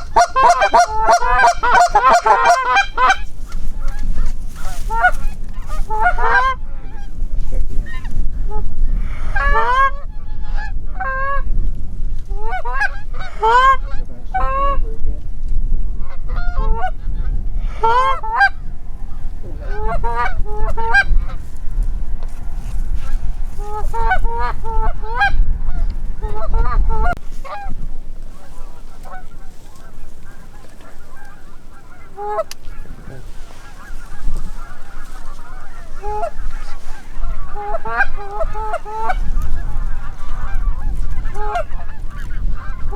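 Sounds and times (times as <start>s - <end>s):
geese honking and clucking: 0.0s - 7.1s, 12.4s - 14.8s, 19.6s - 21.5s, 22.4s - 42.9s.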